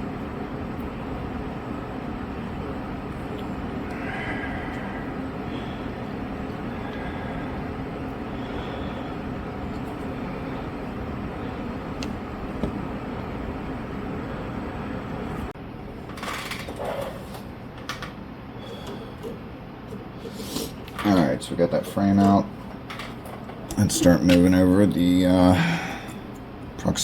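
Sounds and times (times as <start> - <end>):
steady machine noise: 0.0 - 15.5.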